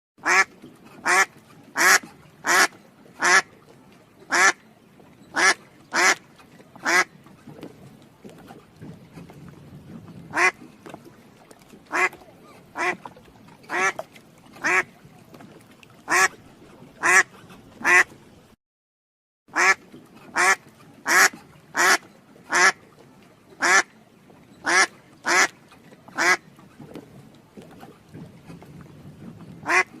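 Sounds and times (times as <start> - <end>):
duck quacking: 0.2 - 3.4, 4.3 - 4.6, 5.4 - 6.2, 6.8 - 7.1, 10.3 - 10.6, 11.9 - 12.2, 12.8 - 13.0, 13.7 - 14.0, 14.6 - 14.9, 16.1 - 16.4, 17.0 - 18.1, 19.5 - 19.8, 20.4 - 22.8, 24.7 - 25.5, 26.2 - 26.4, 29.6 - 30.0.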